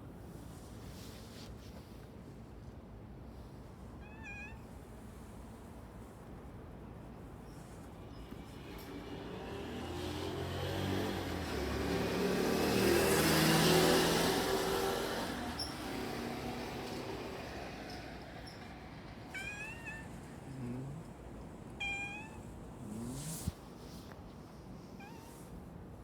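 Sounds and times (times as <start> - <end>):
cat meowing plaintively: 4.0 - 4.7, 19.3 - 21.1, 21.8 - 22.6, 25.0 - 25.5
vehicle passing: 8.5 - 21.2, 22.8 - 23.6.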